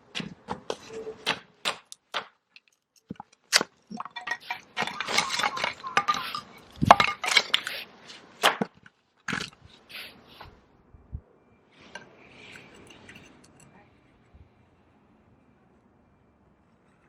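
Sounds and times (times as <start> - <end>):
wood cracking and scraping: 2.5 - 9.7.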